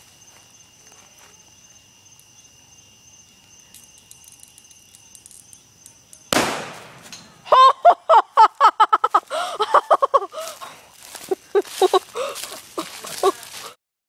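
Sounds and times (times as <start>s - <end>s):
loud fire explosion blast: 6.4s - 7.1s.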